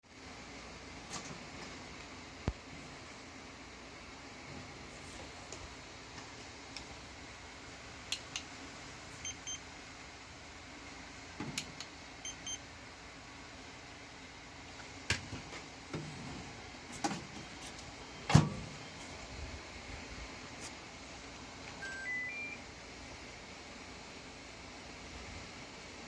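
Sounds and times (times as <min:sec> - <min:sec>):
short high beeps: 0:21.8 - 0:22.6.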